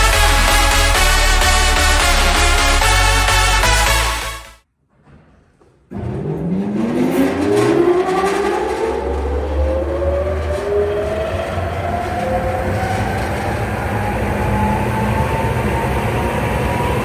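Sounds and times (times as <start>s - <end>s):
extraction fan whine: 5.9s - 17.0s.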